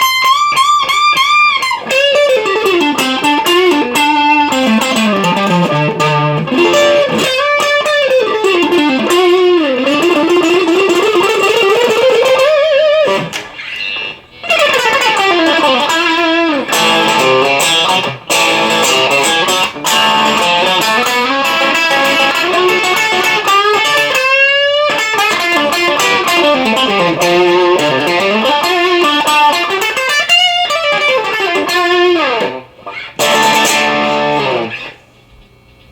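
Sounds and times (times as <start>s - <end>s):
overdriven electric guitar lead: 0.0s - 35.0s.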